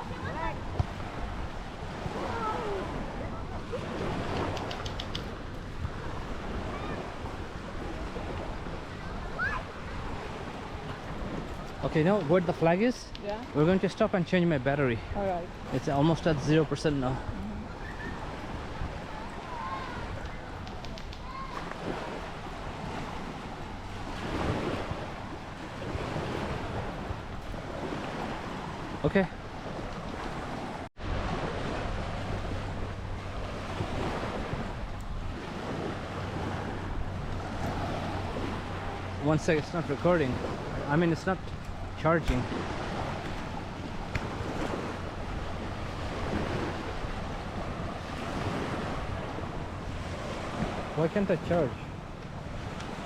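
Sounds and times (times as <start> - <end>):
wind rumbling on microphone: 0.0 - 51.0
surf washing onto beach: 0.0 - 53.0.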